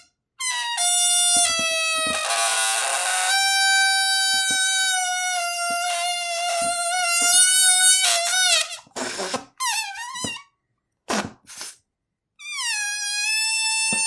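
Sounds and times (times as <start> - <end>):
balloon squealing: 0.0 - 10.5, 11.1 - 11.8, 12.4 - 14.0
air rushing from balloon: 5.8 - 10.3, 11.1 - 11.8.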